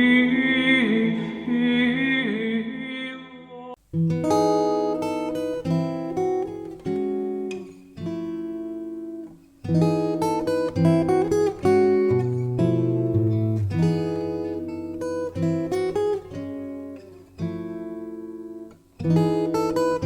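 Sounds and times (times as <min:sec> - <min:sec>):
acoustic guitar chords: 0:00.0 - 0:03.2, 0:03.8 - 0:20.0.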